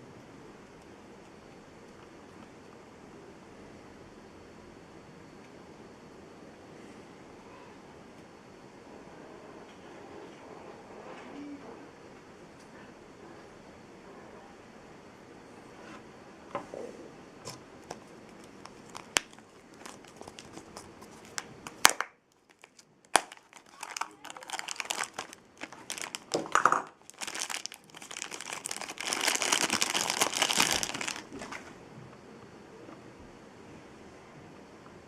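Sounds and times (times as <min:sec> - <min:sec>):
plastic packaging crinkling: 0:17.5 - 0:31.7.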